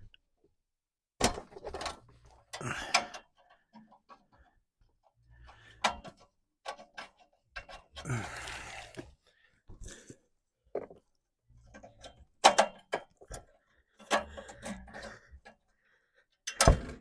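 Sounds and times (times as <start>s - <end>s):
plastic and metal parts clicking: 5.5s - 9.1s, 11.6s - 15.6s, 16.4s - 17.0s.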